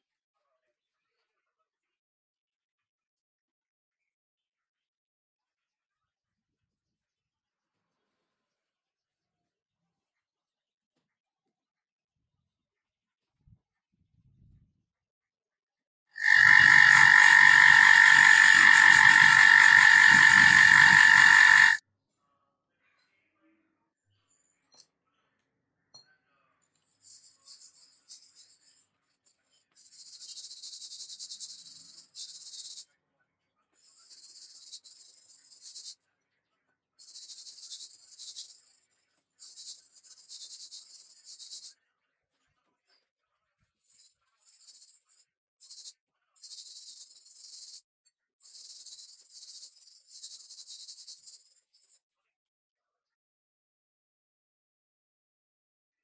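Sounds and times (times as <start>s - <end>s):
hand scraping strokes: 16.2s - 21.8s.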